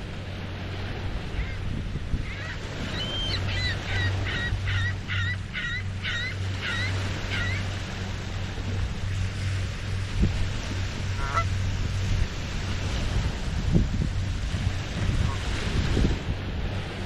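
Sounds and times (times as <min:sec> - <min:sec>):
lake waves lapping shore: 0:00.0 - 0:17.0
steady low hum: 0:00.0 - 0:17.0
geese honking: 0:02.2 - 0:07.7, 0:11.1 - 0:11.6.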